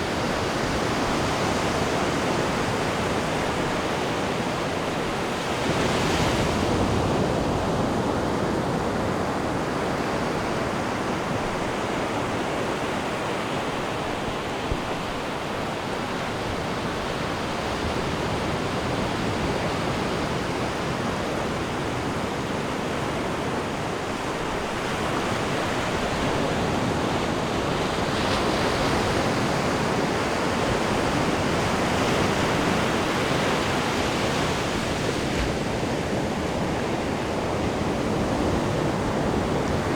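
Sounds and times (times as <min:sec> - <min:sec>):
waves breaking on beach: 0:00.0 - 0:39.9.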